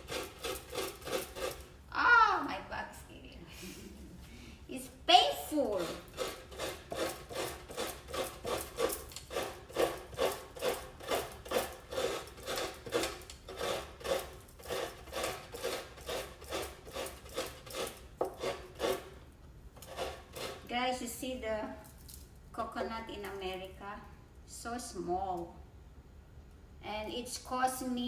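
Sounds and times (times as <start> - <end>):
coconut scraping on grater: 0.0 - 1.8, 5.5 - 19.2, 19.8 - 20.8.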